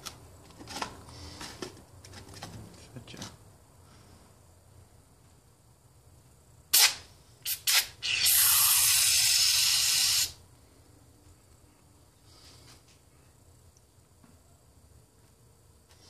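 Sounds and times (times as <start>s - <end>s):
aerosol can spraying: 6.7s - 10.4s.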